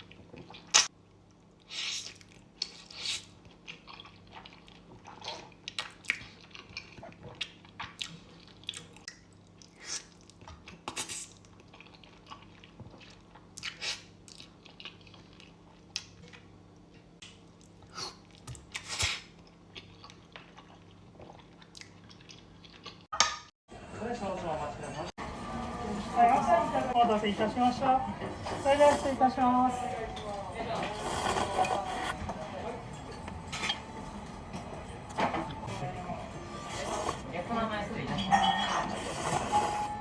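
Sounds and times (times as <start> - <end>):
wet chewing and mouth sounds: 0.0 - 23.1
slurping noodles: 30.9 - 32.2, 38.7 - 39.9.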